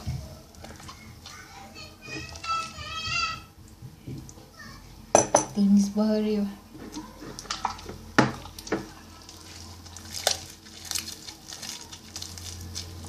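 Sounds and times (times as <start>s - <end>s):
small sticky crackles: 8.4s - 13.0s.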